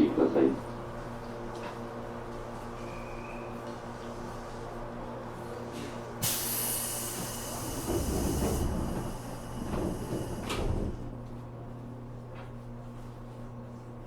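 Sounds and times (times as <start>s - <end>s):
train equipment hum: 6.0s - 13.3s
hiss of air: 6.2s - 11.0s
train doors thudding shut: 6.2s - 11.2s.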